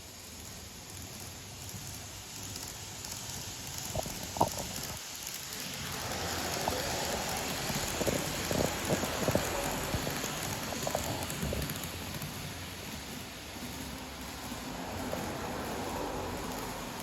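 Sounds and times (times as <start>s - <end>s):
model train rattling hiss: 0.0s - 17.0s.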